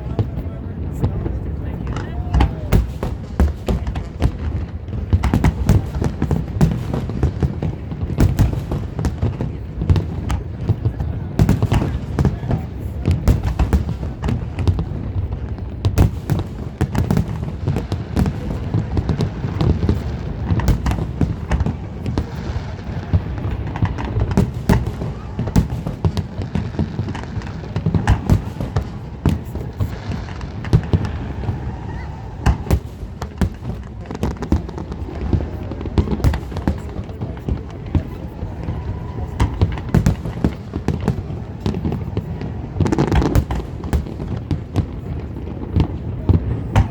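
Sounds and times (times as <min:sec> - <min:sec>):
fireworks bursting: 0:00.1 - 0:46.9.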